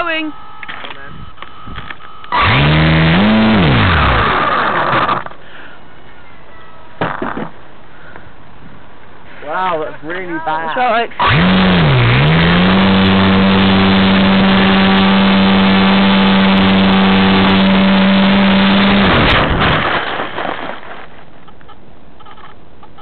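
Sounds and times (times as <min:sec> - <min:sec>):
model plane motor buzzing: 0:02.3 - 0:05.3, 0:11.2 - 0:19.3.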